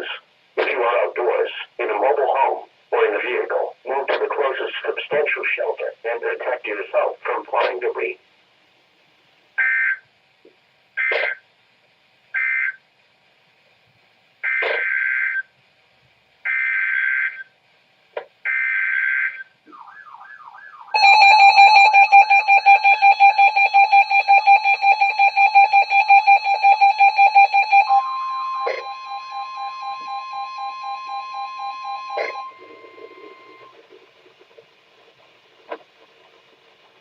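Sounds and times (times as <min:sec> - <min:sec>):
two-tone attention signal: 0:20.9 - 0:33.8.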